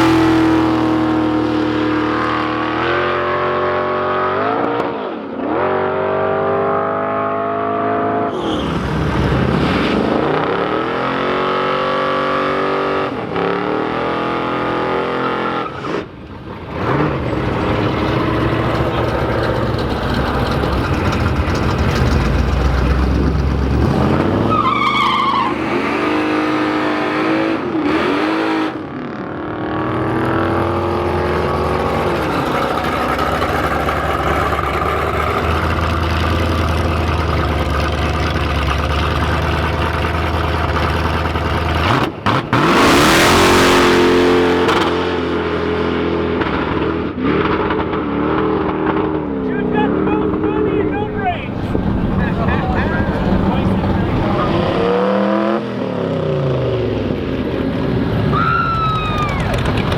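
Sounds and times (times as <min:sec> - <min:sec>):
racing car engines revving: 0:00.0 - 0:59.9
tyres squealing: 0:24.2 - 0:26.5.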